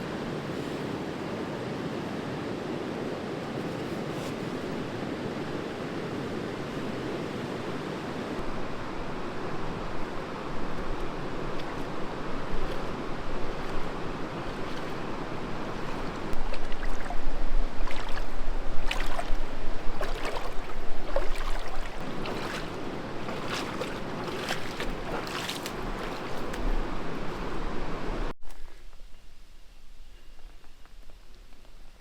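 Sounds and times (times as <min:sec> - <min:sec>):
river water rushing: 0:04.5 - 0:28.3
sharp knocks or splashes: 0:15.8 - 0:26.8.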